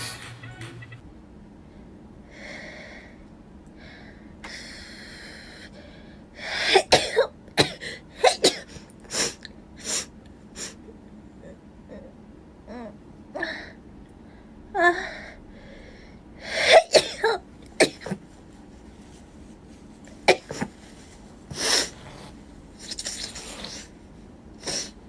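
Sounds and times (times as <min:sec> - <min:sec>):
breathy inhales: 0:15.2 - 0:16.6.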